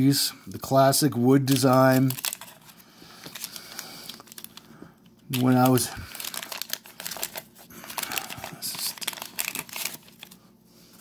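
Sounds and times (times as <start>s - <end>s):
wax paper wrapper tearing: 1.4s - 4.6s, 5.3s - 10.4s
cards rustling: 1.4s - 10.4s.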